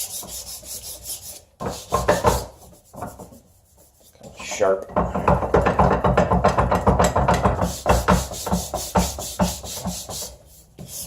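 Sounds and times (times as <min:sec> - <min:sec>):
hand sanding wood: 0:00.0 - 0:04.4, 0:07.2 - 0:11.0.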